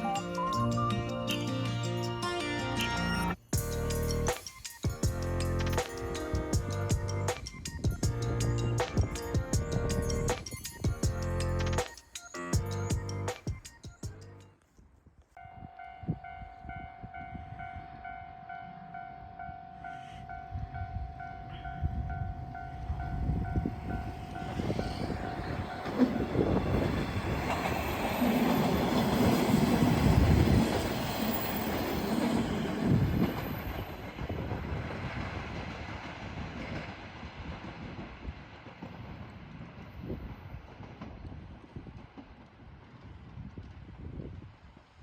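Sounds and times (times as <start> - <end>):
level crossing warning bell: 15.4 - 33.9
train wheels clacking on rails: 23.6 - 43.8.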